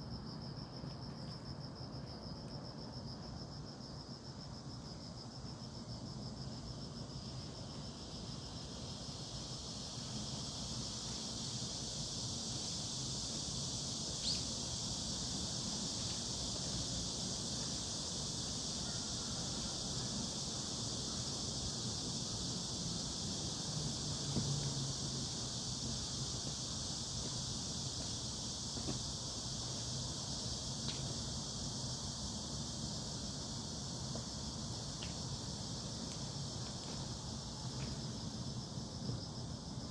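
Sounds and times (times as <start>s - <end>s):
insects buzzing: 0.0s - 39.9s
faint ticks: 30.8s - 31.2s, 35.0s - 35.2s.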